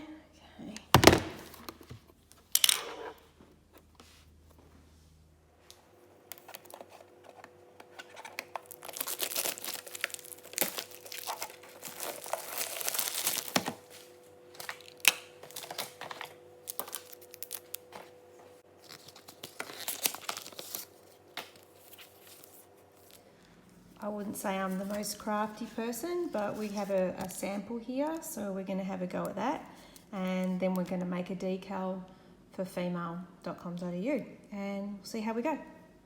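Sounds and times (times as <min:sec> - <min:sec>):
packaging crinkling and tearing: 0:06.3 - 0:18.0, 0:18.8 - 0:23.2.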